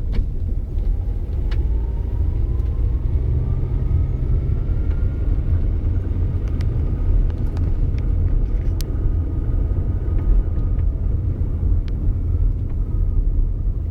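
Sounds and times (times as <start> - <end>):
car engine rumbling: 0.0 - 13.9
high engine whine: 0.0 - 13.9.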